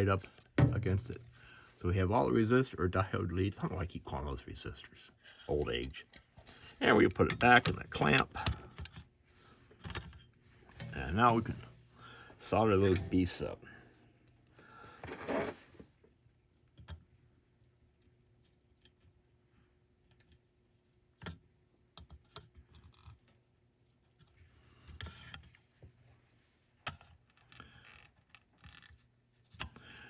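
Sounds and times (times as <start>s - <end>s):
soft rustle: 25.6s - 26.8s.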